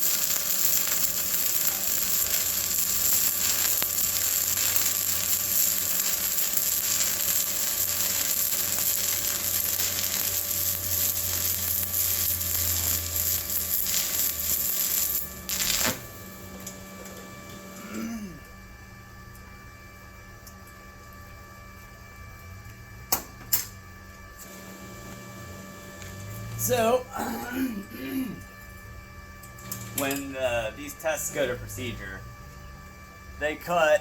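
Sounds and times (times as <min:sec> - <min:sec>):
welding arc crackling: 0:00.0 - 0:17.8, 0:24.4 - 0:27.0, 0:29.4 - 0:32.2, 0:33.4 - 0:34.0.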